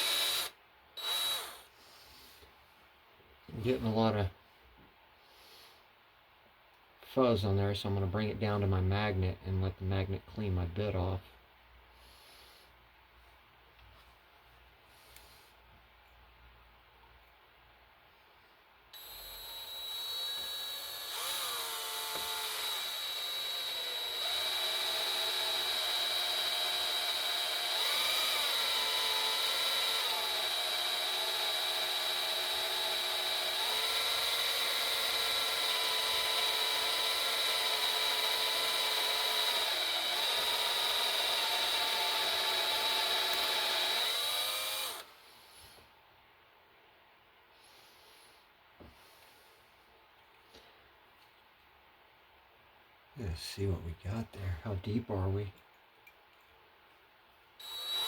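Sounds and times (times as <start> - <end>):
electric drill whining: 0.0 - 1.7, 19.0 - 45.1, 57.6 - 58.0.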